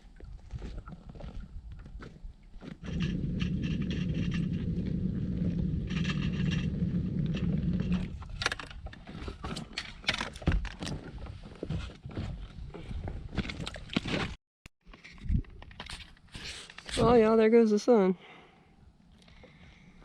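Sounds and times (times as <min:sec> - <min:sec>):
kayak hull scraping bottom: 0:02.6 - 0:12.7.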